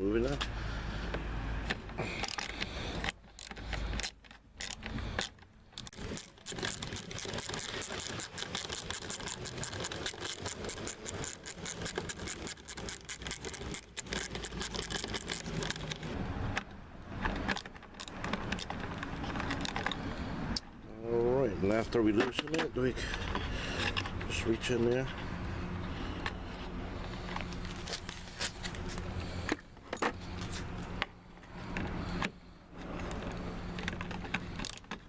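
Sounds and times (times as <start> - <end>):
ratchet wrench clicking: 2.2 - 16.2.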